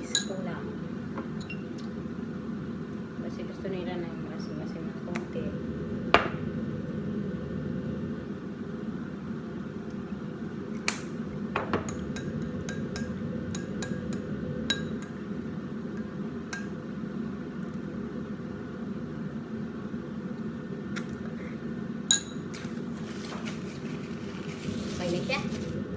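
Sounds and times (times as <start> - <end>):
steady low hum: 0.0 - 25.9
spoon clinking against bowl: 22.1 - 22.4.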